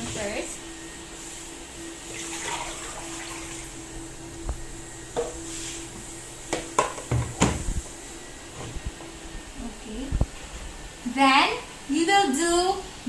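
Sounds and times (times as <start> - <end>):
water running from a tap: 2.1 - 3.8.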